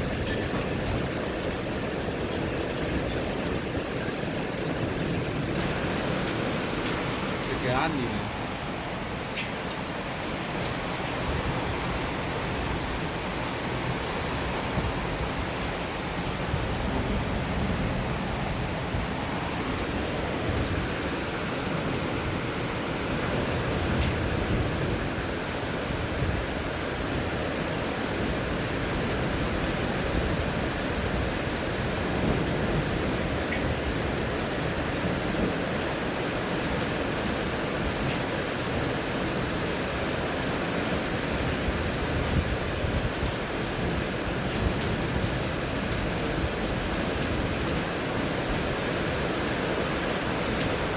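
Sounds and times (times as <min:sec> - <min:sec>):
steady rain: 0:00.0 - 0:50.9
raindrop ticks: 0:00.2 - 0:08.3, 0:09.2 - 0:09.9.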